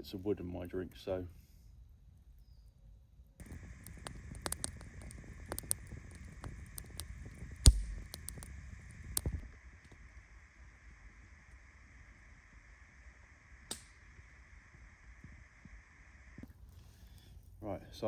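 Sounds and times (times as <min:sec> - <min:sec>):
campfire crackling and popping: 0:03.4 - 0:10.0
steady hiss: 0:03.4 - 0:18.0.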